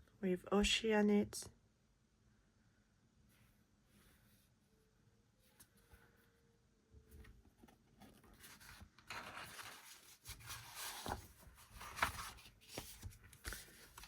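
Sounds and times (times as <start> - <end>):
paper and plastic rustling: 8.0 - 14.0.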